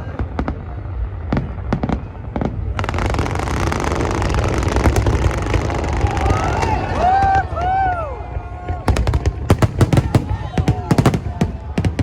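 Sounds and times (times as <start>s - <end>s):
fireworks crackle: 0.0s - 7.8s
fireworks bangs: 0.0s - 12.0s.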